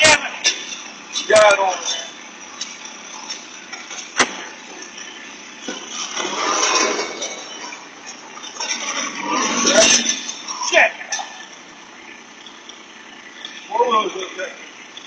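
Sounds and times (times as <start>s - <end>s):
sharp knock: 4.2s - 4.5s.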